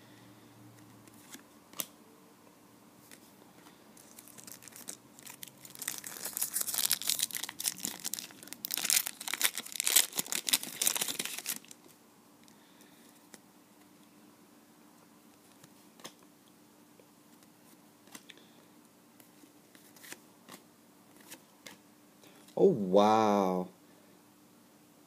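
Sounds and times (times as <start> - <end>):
wrapper tearing and crinkling: 4.0 - 11.8.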